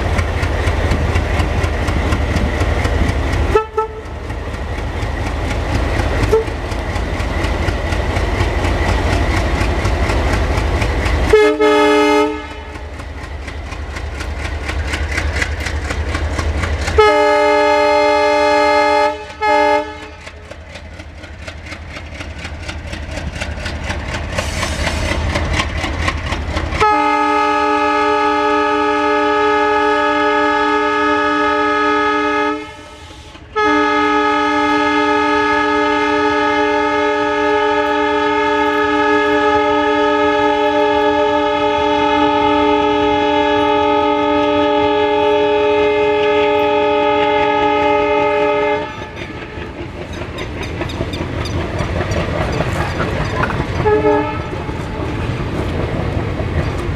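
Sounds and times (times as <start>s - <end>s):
train wheels clacking: 0.0s - 30.9s, 32.6s - 44.0s, 45.0s - 56.9s
locomotive horn: 3.5s - 4.2s, 6.2s - 6.6s, 11.2s - 12.8s, 16.9s - 20.4s, 26.8s - 49.6s, 53.8s - 54.7s.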